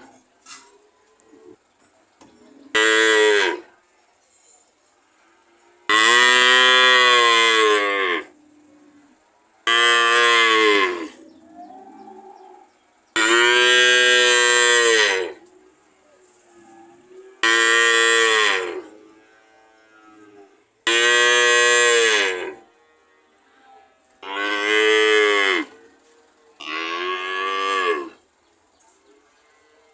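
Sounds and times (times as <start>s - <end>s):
cow mooing: 2.7s - 3.7s, 5.3s - 15.8s, 16.5s - 28.2s.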